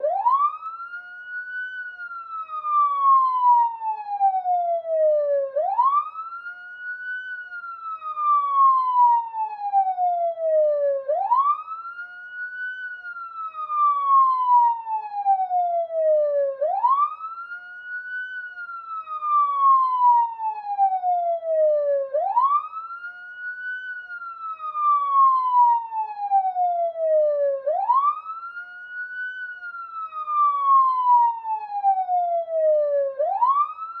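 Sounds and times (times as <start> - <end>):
police car siren wailing: 0.0 - 34.0.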